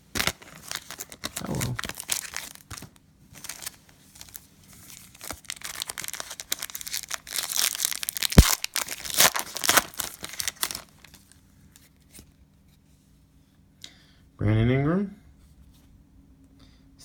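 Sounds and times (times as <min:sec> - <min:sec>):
cellophane crinkling and tearing: 0:00.0 - 0:12.2.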